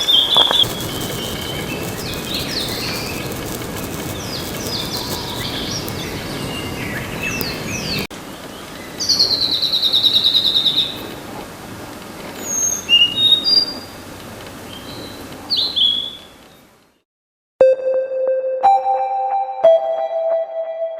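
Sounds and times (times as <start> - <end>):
flycatcher singing: 0.5 - 8.0.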